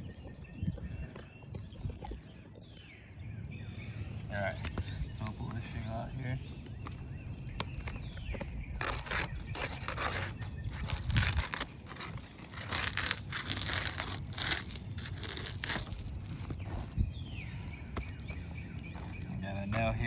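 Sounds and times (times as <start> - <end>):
roof shingle scraping and tearing: 7.4 - 20.0.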